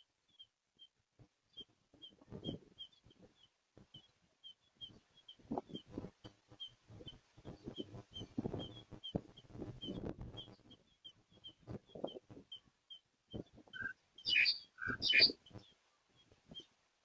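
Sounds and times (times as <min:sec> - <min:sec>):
faint high chirp: 0:06.6 - 0:16.7.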